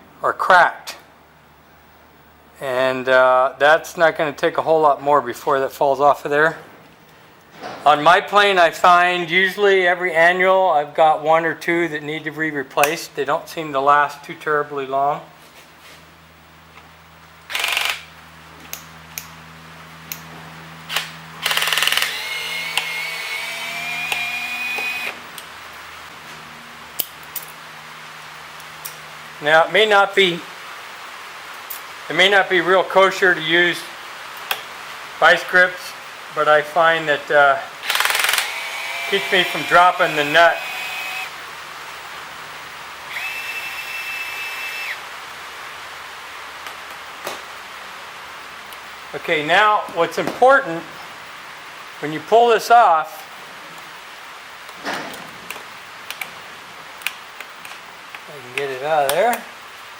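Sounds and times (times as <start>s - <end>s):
power drill motor whine: 17.5s - 18.1s, 20.9s - 25.2s, 37.8s - 41.4s, 43.1s - 45.0s
short rattling burst: 20.9s - 23.2s, 37.8s - 41.1s.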